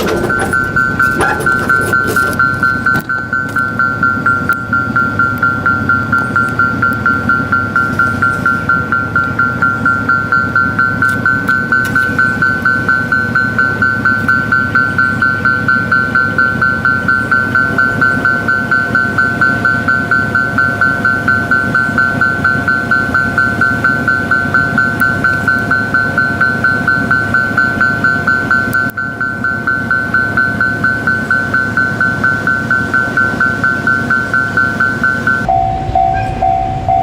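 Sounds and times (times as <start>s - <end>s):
level crossing electronic bell: 0.0s - 37.0s
low rumble: 35.5s - 37.0s.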